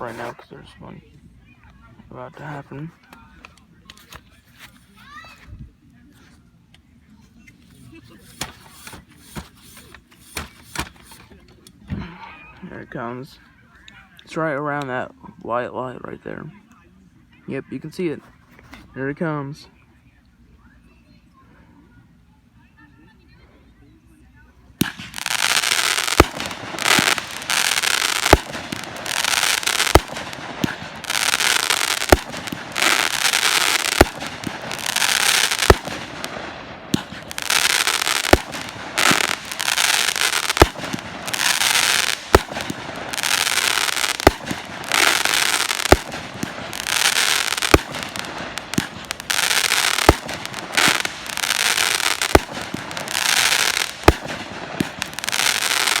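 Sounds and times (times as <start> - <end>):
fireworks bangs: 0.0 - 0.4, 7.7 - 11.4, 24.8 - 56.0
crackling hiss: 24.8 - 56.0.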